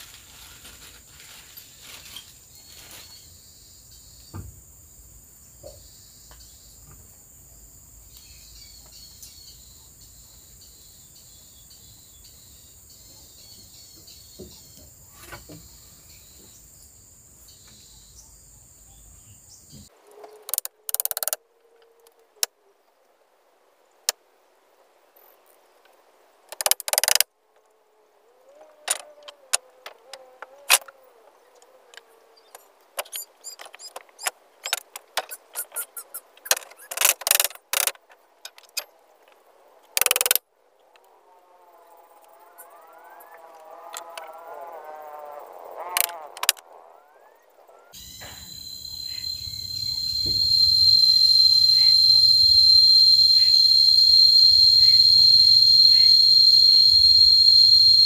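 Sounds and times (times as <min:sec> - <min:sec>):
scattered clicks: 0:20.5 - 0:21.4, 0:26.5 - 0:27.3, 0:32.5 - 0:38.8, 0:40.0 - 0:40.4, 0:49.2 - 0:58.0
faint chirps: 0:30.0 - 0:37.0, 0:41.7 - 0:46.1, 0:46.9 - 0:58.0
high-pitched insect drone: 0:48.0 - 0:58.0
loud noise bursts: 0:48.2 - 0:58.0.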